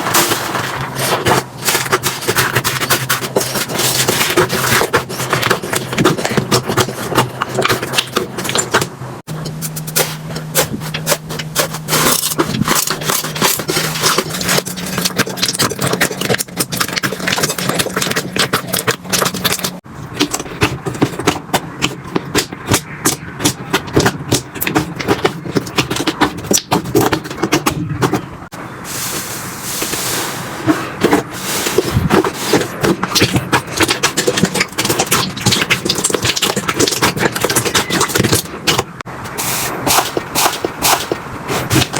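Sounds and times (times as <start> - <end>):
slime crackling and popping: 32.0 - 38.8.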